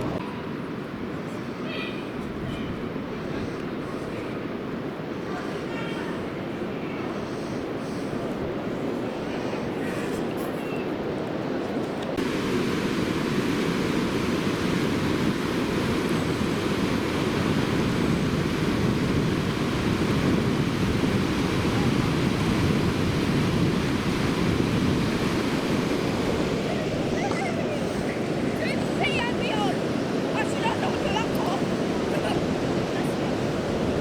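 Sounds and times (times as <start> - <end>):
wind on microphone: 0.0 - 34.0
surf breaking on beach: 11.0 - 34.0.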